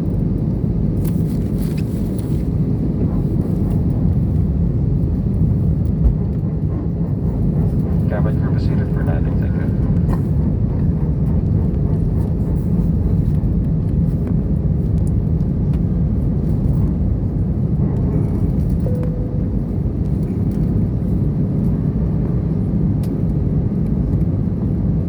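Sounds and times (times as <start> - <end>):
airplane cabin engine drone: 0.0 - 25.0.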